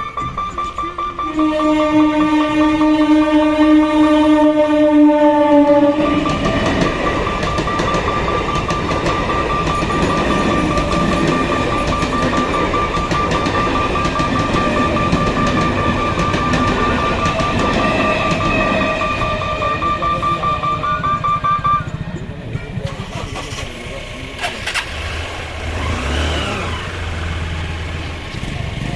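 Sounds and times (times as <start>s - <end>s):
train rushing past: 0.0s - 28.9s
train horn: 1.0s - 6.5s, 16.8s - 20.0s
wheels clacking over rail joints: 4.6s - 27.1s.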